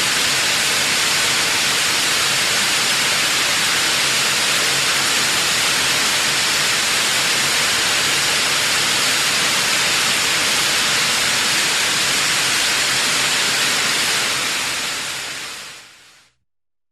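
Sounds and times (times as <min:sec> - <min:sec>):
waterfall spray hissing: 0:00.0 - 0:16.4.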